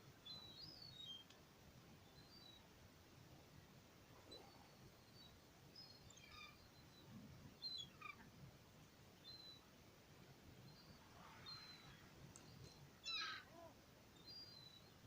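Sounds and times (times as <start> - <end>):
small birds chirping: 0.2 - 1.4, 2.0 - 2.7, 4.2 - 9.7, 10.5 - 15.0
distant gulls calling: 7.8 - 8.3, 11.0 - 13.7.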